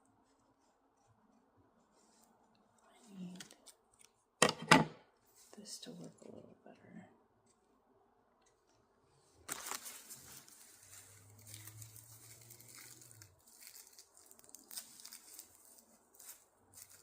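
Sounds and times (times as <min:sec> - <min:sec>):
fabric rustling and crinkling: 0:08.6 - 0:17.0.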